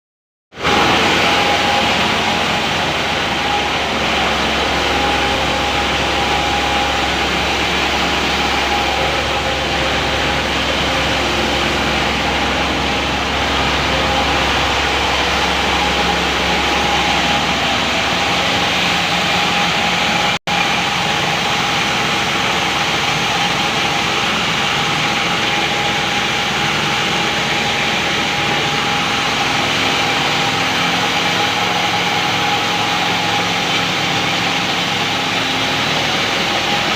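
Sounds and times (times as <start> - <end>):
feeding machine mechanical hum: 0.6 - 36.9
low rumble: 0.7 - 21.6.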